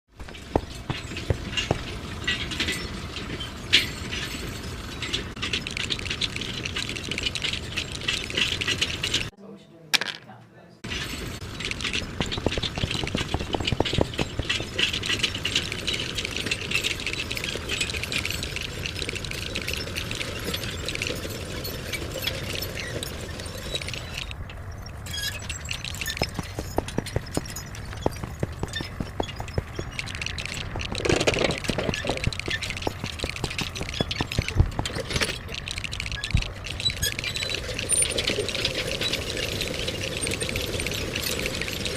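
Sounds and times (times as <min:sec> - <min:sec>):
plastic bricks clicking and rattling: 0:05.3 - 0:09.3, 0:10.0 - 0:10.2, 0:10.9 - 0:24.4, 0:25.2 - 0:41.9
plastic bricks clicking together: 0:10.0 - 0:10.2, 0:25.7 - 0:41.9.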